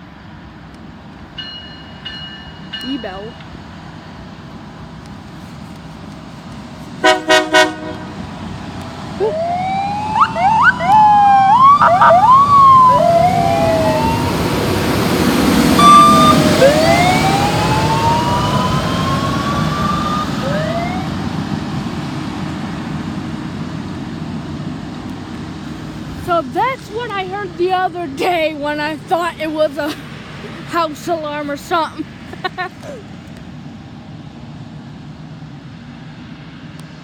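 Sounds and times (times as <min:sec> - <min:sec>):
rail grinder rumbling: 0:00.0 - 0:32.4
horn blasts: 0:07.0 - 0:08.4, 0:15.6 - 0:17.2
rising and falling siren: 0:07.0 - 0:24.1.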